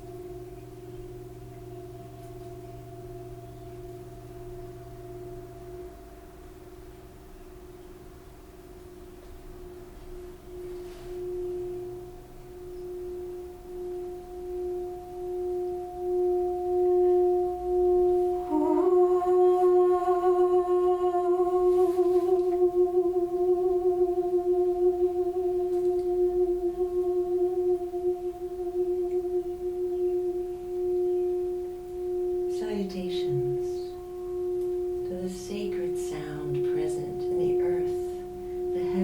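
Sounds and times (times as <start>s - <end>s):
second singing bowl ringing: 0.0s - 39.0s
singing bowl sustained tone: 0.0s - 39.0s.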